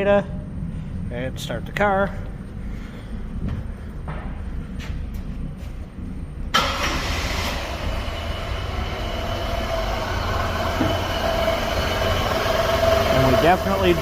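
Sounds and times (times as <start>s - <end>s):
car engine starting: 6.4s - 14.0s
misfiring engine running: 6.6s - 14.0s.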